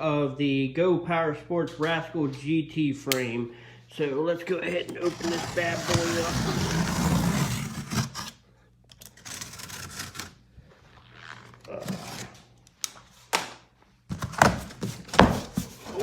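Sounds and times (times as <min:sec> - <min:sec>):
cardboard rustling and scraping: 0:04.6 - 0:08.4, 0:09.1 - 0:12.6, 0:14.1 - 0:16.0
cardboard box being opened: 0:04.9 - 0:08.3, 0:11.0 - 0:12.4, 0:14.1 - 0:16.0.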